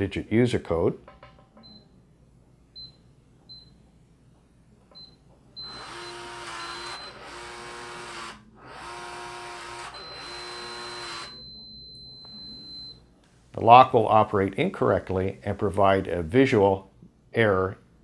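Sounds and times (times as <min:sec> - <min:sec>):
keypad beeps: 0:09.9 - 0:13.0
steady high beep: 0:09.9 - 0:13.0.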